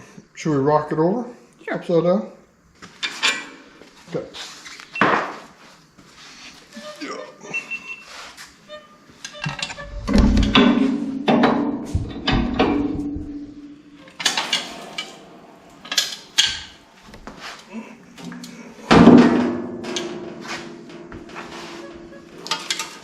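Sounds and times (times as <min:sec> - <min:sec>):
heavy metal clanks: 0:09.7 - 0:17.0, 0:18.2 - 0:23.0.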